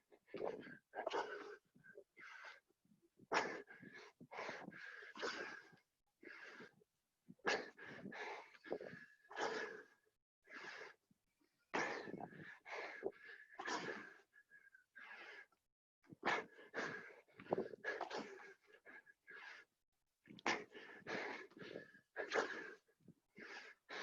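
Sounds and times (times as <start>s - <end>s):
heavy rapid breathing and gasping: 0.0s - 19.8s, 20.4s - 24.0s.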